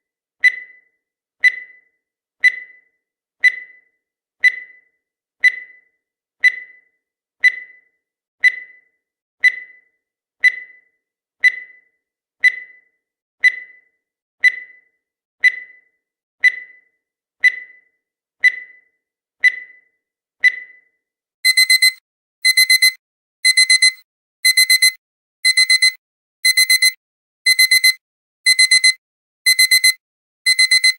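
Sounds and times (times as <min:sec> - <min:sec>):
digital alarm clock beeping: 0:00.4 - 0:30.9.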